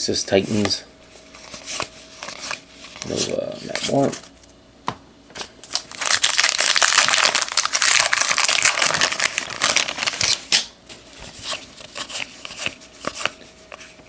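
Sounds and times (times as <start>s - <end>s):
cards rustling: 0.5s - 4.4s, 5.4s - 10.6s, 11.2s - 14.0s
card pack wrapper crinkling: 5.6s - 10.7s.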